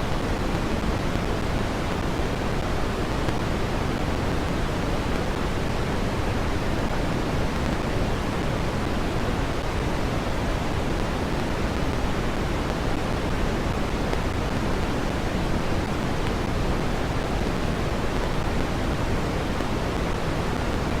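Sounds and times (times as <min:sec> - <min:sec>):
red noise hiss: 0:00.0 - 0:21.0.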